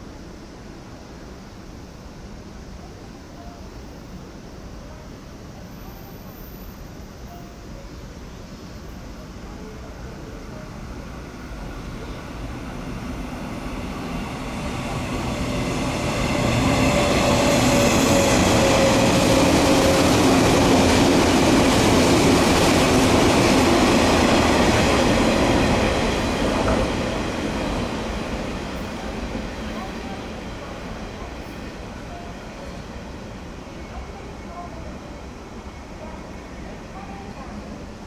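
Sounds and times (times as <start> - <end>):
electric train passing: 0.0 - 38.0
train wheels on rails: 8.8 - 38.0.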